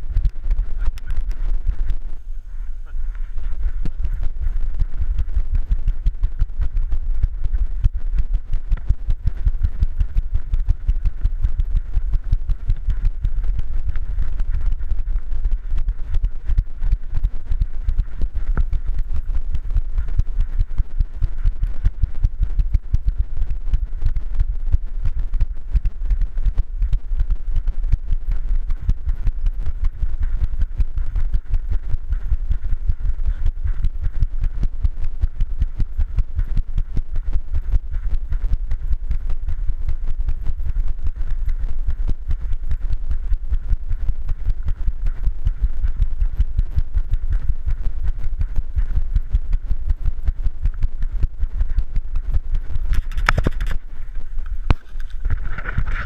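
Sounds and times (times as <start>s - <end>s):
camera knocking and rumbling: 0.0s - 56.0s
dog footfalls on trail: 52.9s - 56.0s.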